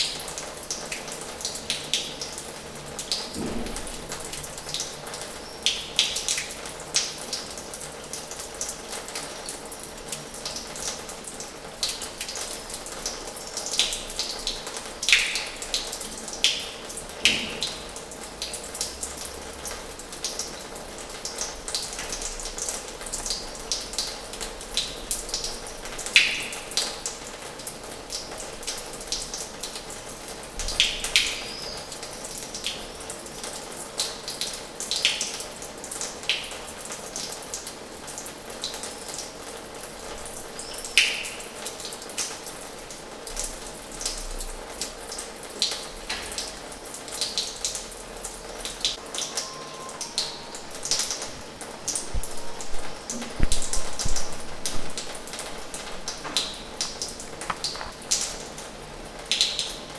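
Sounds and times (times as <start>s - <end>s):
water drops plinking: 48.9s - 58.3s
tap water running into basin: 48.9s - 59.7s.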